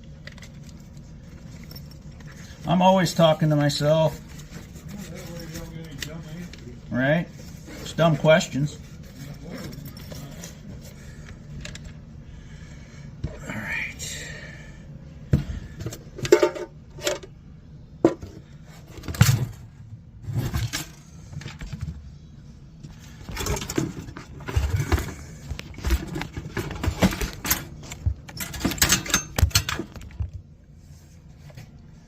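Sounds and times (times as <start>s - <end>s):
metal hardware clinking and rattling: 9.0s - 10.6s, 15.9s - 17.3s, 23.2s - 30.4s.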